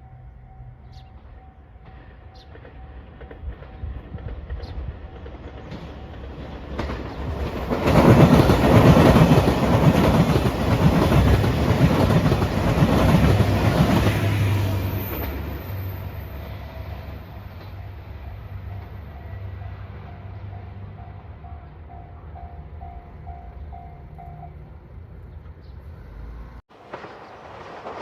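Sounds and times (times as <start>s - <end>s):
diesel train passing: 0.0s - 28.0s
train wheels clattering over rail joints: 1.8s - 15.6s.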